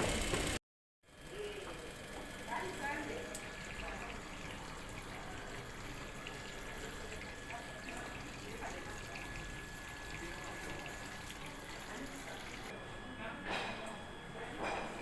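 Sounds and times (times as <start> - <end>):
water running into washing machine: 0.0 - 0.6, 1.8 - 12.7.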